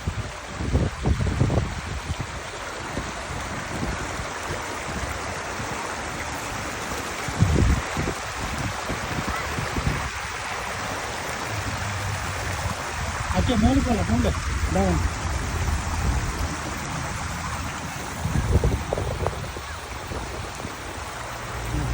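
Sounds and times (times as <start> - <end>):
waterfall pouring: 0.0 - 21.9
short low rumbles: 21.5 - 21.9.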